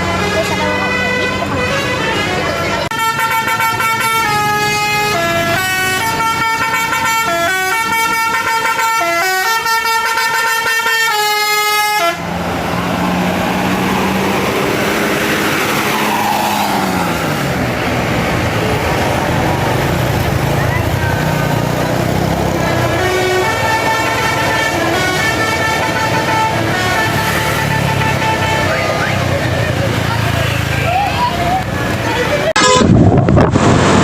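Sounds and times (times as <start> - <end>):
bus engine running: 0.0 - 34.0
road noise: 0.0 - 34.0
musical air horn tune: 0.1 - 12.3, 22.7 - 29.0, 32.6 - 33.0.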